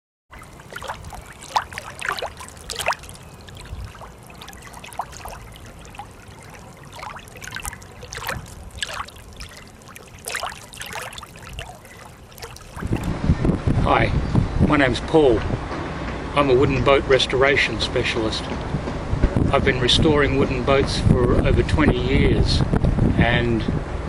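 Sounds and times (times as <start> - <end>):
small water plinks and splashes: 0.3 - 13.1
water trickling and lapping: 0.3 - 13.2.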